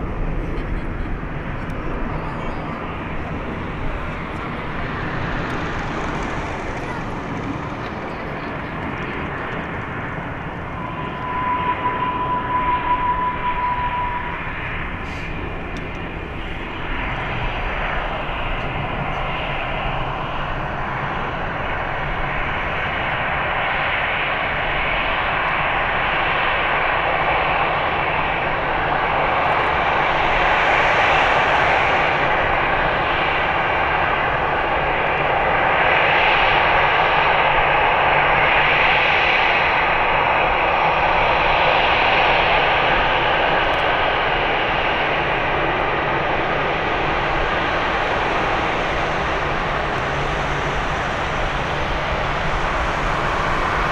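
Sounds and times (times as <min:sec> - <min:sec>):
jet engines roaring: 0:00.0 - 0:53.9
steady high tone: 0:09.9 - 0:15.6.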